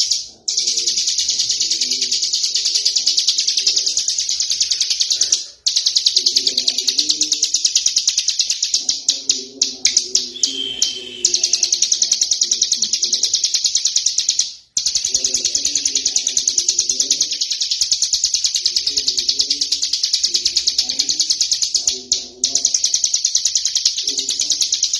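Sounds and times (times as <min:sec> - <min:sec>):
bird song rattle: 0:00.0 - 0:24.9
low repeated bird notes: 0:00.0 - 0:24.9.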